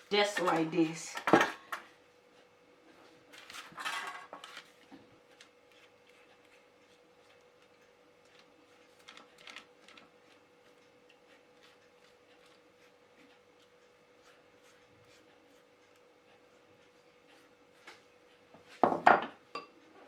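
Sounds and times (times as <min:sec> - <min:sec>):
sausage rolls clattering on baking tray: 0:03.6 - 0:04.6.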